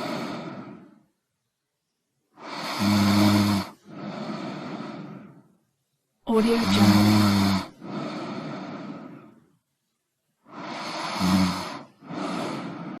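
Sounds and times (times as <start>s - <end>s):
person snoring: 0.0s - 1.0s, 2.4s - 5.4s, 6.3s - 9.4s, 10.4s - 13.0s
long breathy breaths: 0.0s - 1.2s, 2.3s - 5.8s, 6.7s - 9.7s, 10.4s - 13.0s.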